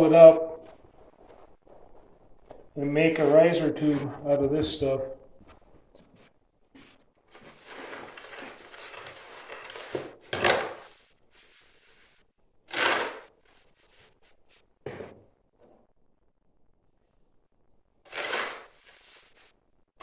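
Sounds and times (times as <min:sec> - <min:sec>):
paper rustling: 0:06.8 - 0:12.2, 0:18.1 - 0:19.5.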